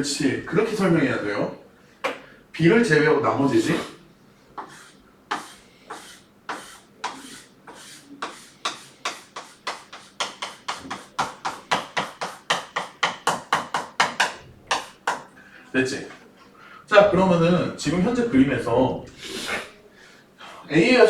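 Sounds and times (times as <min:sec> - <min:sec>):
pen scribbling on paper: 0:04.6 - 0:13.4.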